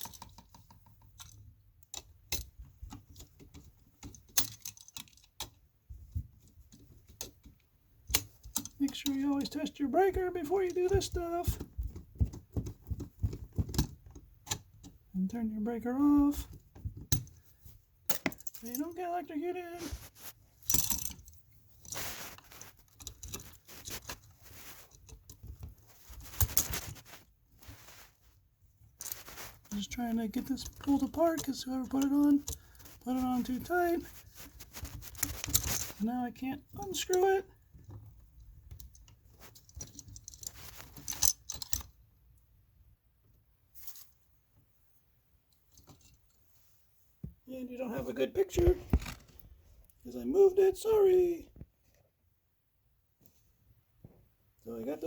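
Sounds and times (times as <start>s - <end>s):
hand tools clicking and scraping: 29.0s - 37.4s.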